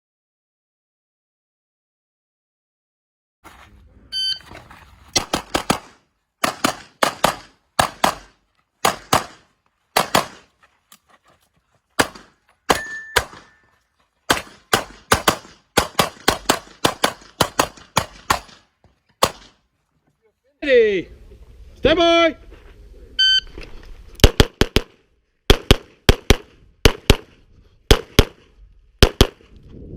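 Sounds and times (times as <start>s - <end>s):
short beep: 4.1s - 4.5s, 23.2s - 23.6s
pistol shots: 5.2s - 10.5s, 12.0s - 13.6s, 14.3s - 18.6s, 19.2s - 19.6s, 24.2s - 27.3s, 27.9s - 28.4s, 29.0s - 29.4s.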